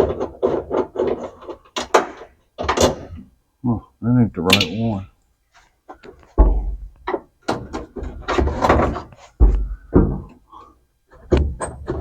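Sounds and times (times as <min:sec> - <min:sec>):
heavy thumps: 0:06.3 - 0:10.4.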